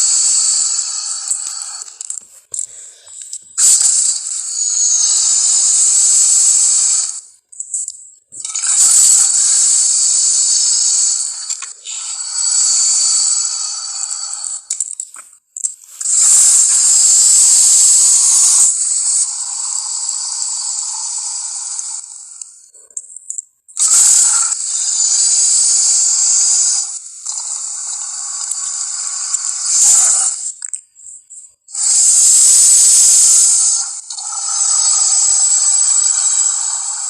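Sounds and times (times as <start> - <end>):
hissing rasping creature cry: 3.6 - 7.2, 8.6 - 14.7, 16.0 - 22.3, 23.8 - 30.5, 31.8 - 37.0.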